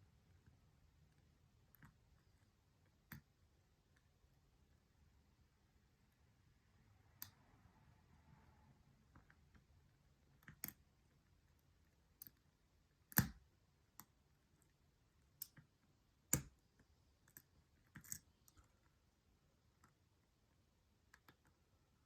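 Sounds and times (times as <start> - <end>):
metallic clicks of lock picking: 10.4 - 10.8, 17.3 - 18.6.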